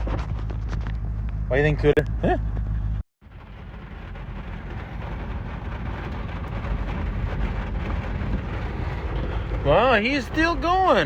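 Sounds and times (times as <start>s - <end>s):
wind: 0.0s - 11.0s
rain on a truck: 3.2s - 11.0s.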